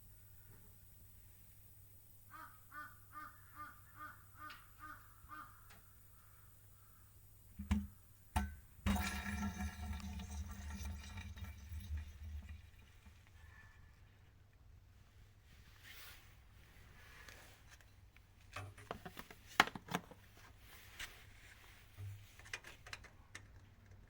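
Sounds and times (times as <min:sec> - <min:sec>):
steady noise with low hum: 0:00.0 - 0:24.0
bird calling: 0:02.3 - 0:07.2.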